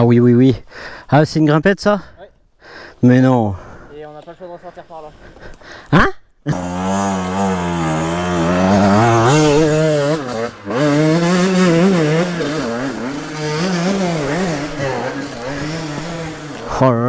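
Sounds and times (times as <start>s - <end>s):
two-stroke motorcycle engine revving: 6.5s - 17.0s.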